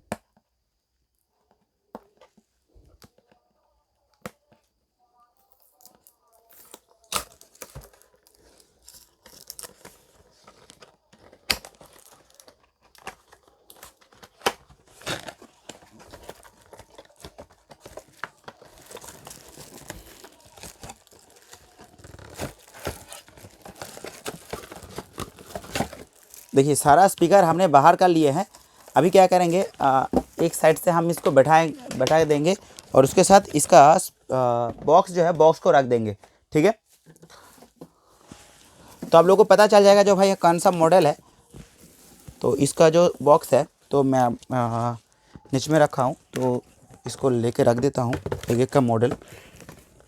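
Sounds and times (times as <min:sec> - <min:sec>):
plastic packaging crinkling and tearing: 0:05.7 - 0:34.0.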